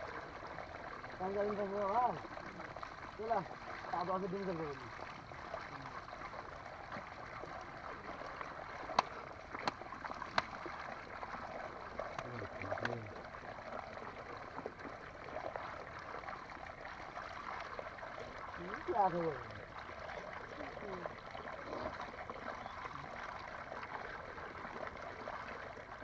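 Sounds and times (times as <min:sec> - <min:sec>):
steady water noise: 0:00.0 - 0:26.0
low voice: 0:12.2 - 0:13.2, 0:20.5 - 0:22.0.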